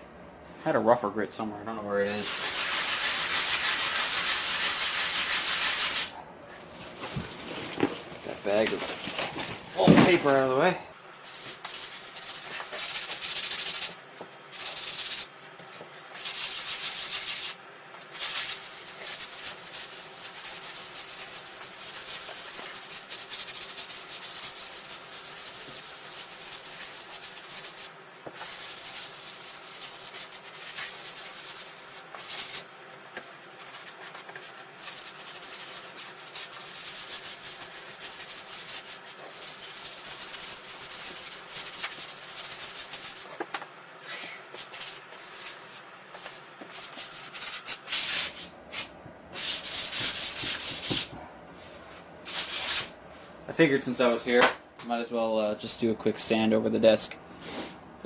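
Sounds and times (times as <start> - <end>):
sandpaper rubbing on wood: 2.2 - 6.1, 6.8 - 10.4, 11.2 - 15.4, 16.2 - 32.7, 33.3 - 43.4, 44.6 - 51.1, 51.7 - 52.9.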